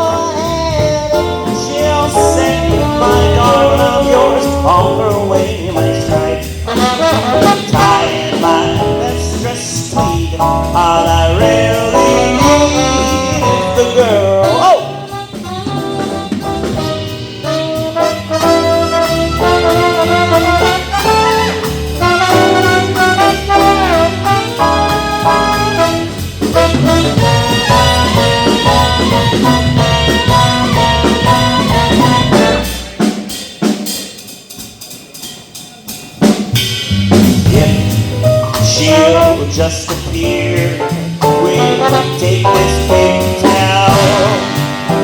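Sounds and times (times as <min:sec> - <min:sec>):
walking bass: 0:00.0 - 0:33.0, 0:36.6 - 0:45.0
drums: 0:00.0 - 0:45.0
swing band playing: 0:00.0 - 0:45.0
brass horns chords: 0:01.1 - 0:33.2, 0:41.4 - 0:45.0.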